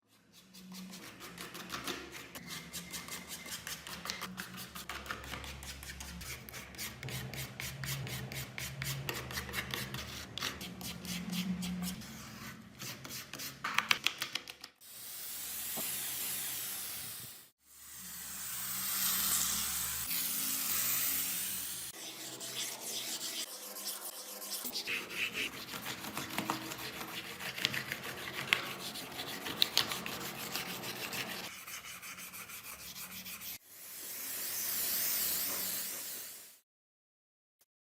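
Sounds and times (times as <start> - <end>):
rubbing and scrubbing strokes: 0.0 - 13.6, 20.0 - 33.6
long hissing: 14.8 - 21.9.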